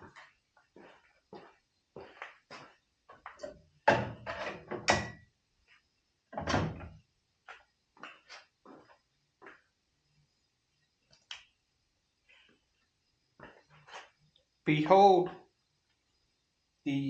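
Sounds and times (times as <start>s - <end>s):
tools clunking against metal tool box: 3.4s - 5.2s.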